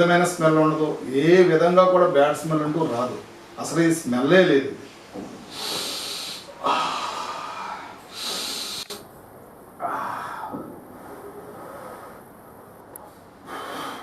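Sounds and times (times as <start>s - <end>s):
person breathing deeply: 5.5s - 9.0s, 9.8s - 12.4s, 13.4s - 14.0s.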